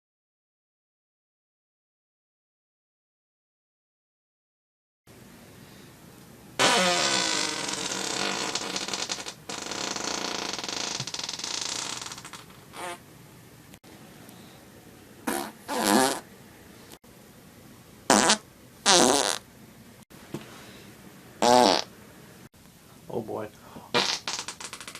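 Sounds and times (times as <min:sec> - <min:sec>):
loud human farts: 0:06.6 - 0:13.0, 0:15.2 - 0:16.3, 0:18.1 - 0:19.4, 0:21.4 - 0:21.9, 0:23.9 - 0:24.9.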